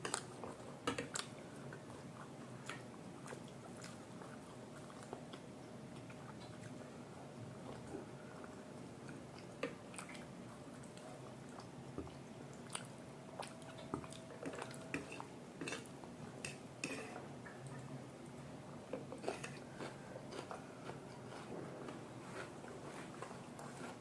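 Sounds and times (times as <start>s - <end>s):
people chewing noodles: 19.1s - 24.0s.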